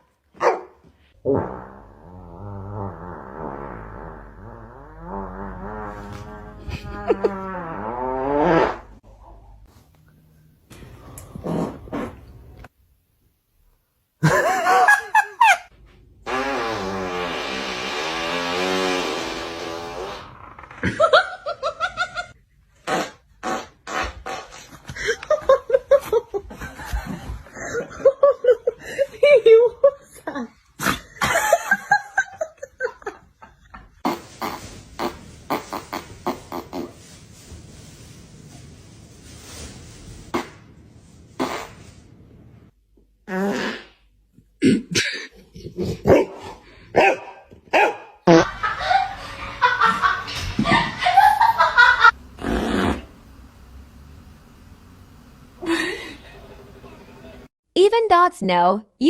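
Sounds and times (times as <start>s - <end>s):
dog barking: 0.4s - 0.8s, 47.0s - 48.2s
farting: 1.2s - 9.0s, 11.3s - 12.2s, 16.2s - 21.0s, 22.8s - 24.8s, 34.0s - 37.2s, 40.3s - 40.7s, 41.3s - 42.0s, 43.2s - 44.9s, 48.3s - 48.5s, 52.4s - 53.2s
pulsing laughter: 48.3s - 52.2s.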